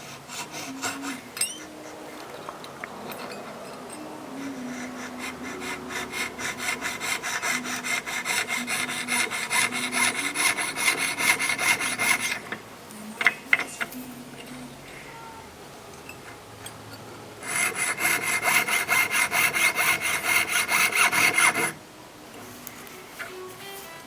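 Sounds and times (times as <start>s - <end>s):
fine saw cutting metal sheet: 0.0s - 2.0s, 4.3s - 12.6s, 17.4s - 21.8s.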